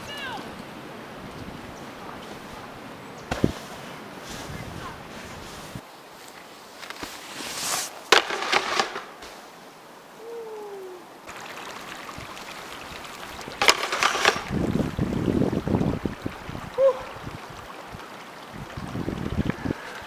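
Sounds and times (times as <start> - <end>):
snowboard sliding on snow: 2.2 - 9.6
snowboard knocking and scraping: 3.3 - 5.8, 6.8 - 9.4, 13.6 - 14.6.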